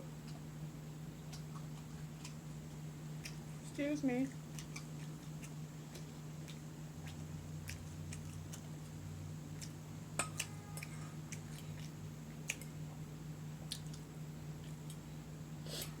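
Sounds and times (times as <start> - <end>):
steady low hum: 0.0 - 16.0
chewing with short clicks: 1.3 - 3.8, 4.4 - 8.9, 9.6 - 13.0, 13.6 - 15.0.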